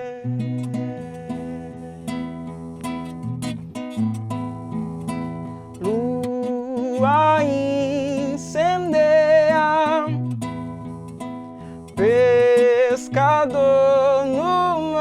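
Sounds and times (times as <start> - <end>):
person singing long notes: 0.0 - 2.3
acoustic guitar chords: 0.0 - 15.0.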